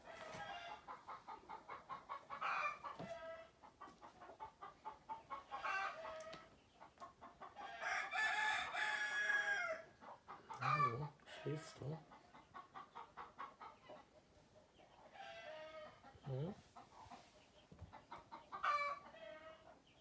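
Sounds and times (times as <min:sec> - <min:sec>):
chickens clucking: 0:00.0 - 0:08.0, 0:09.8 - 0:20.0
rooster crowing: 0:07.8 - 0:09.9.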